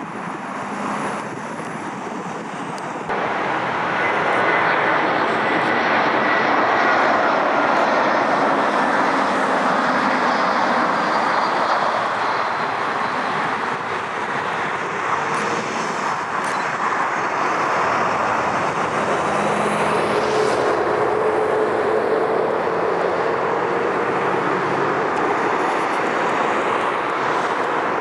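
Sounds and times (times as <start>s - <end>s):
jet engines rushing: 0.0s - 28.0s.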